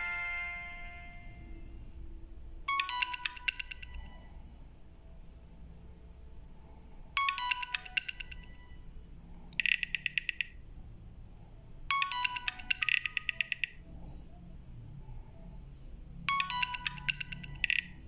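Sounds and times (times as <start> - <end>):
electronic phone ringtone: 0.0 - 1.6, 2.7 - 4.3, 7.2 - 8.9, 9.6 - 10.6, 11.9 - 13.9, 16.3 - 18.0.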